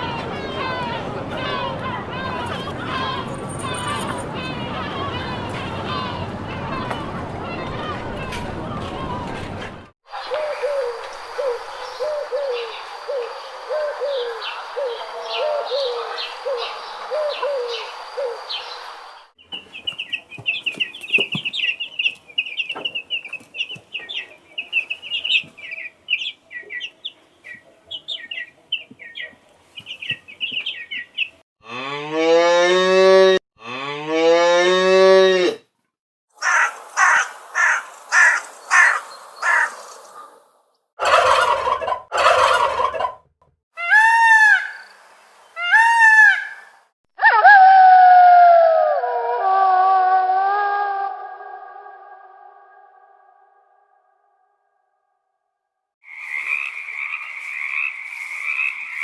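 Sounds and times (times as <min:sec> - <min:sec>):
birds chirping: 0:02.4 - 0:04.6, 0:10.1 - 0:31.4, 0:36.4 - 0:40.5
cow mooing: 0:31.6 - 0:35.6.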